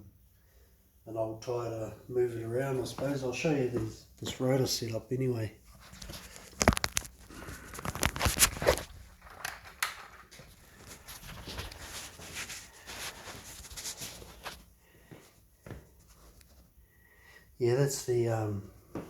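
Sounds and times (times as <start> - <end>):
footsteps: 2.7 - 4.4, 5.7 - 16.7
rustling: 5.6 - 16.8.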